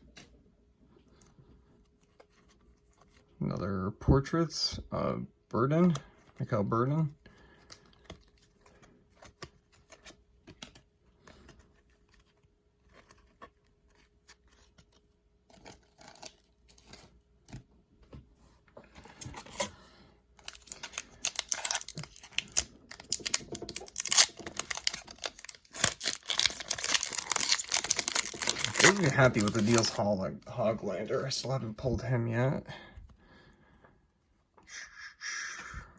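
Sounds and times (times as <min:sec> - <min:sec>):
foil wrapper crinkling and tearing: 0:20.4 - 0:30.1.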